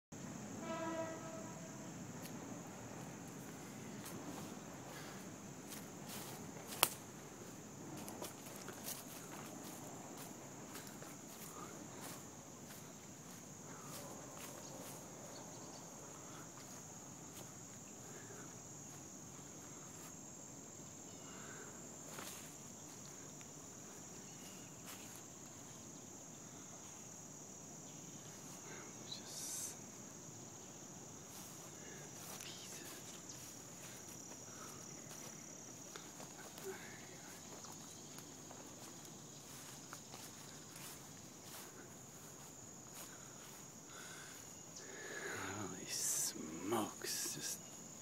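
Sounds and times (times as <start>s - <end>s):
insects trilling: 0.2s - 48.0s.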